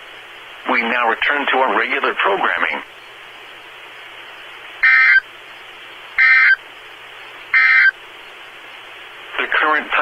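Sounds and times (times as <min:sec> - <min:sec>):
radio hiss: 0:00.0 - 0:10.0
buzzy digital data bursts: 0:03.1 - 0:08.0.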